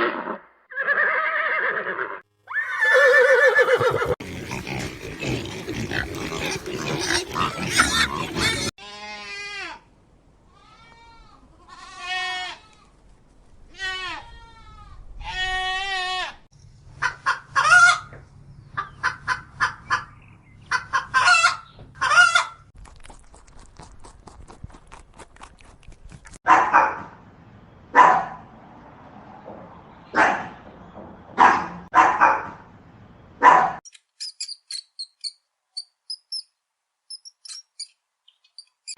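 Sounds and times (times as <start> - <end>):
goats bleating: 3.0 - 9.2.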